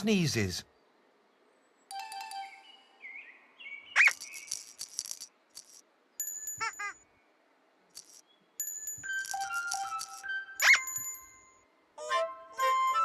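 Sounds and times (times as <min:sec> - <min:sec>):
bouncy wavering chirps: 0:03.9 - 0:04.8, 0:06.2 - 0:07.0, 0:08.6 - 0:11.5
rattling: 0:04.0 - 0:06.7, 0:07.9 - 0:10.3
bell-like tones: 0:06.2 - 0:07.0, 0:08.6 - 0:11.8.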